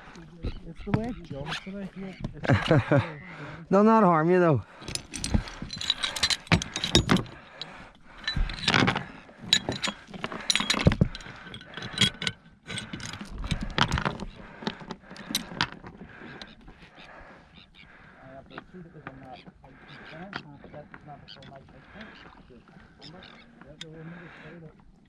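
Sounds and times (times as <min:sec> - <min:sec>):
light metallic rattles: 0:04.8 - 0:16.6.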